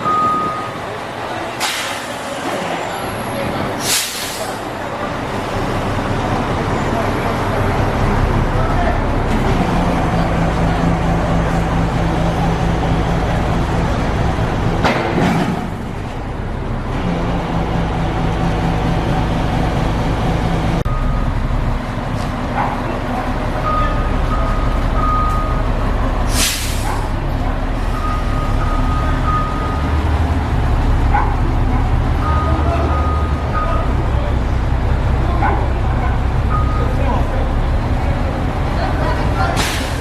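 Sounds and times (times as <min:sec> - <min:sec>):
short high beeps: 0:00.0 - 0:00.8
diesel engine running: 0:00.0 - 0:40.0
air release hiss: 0:03.8 - 0:04.6, 0:26.3 - 0:27.0.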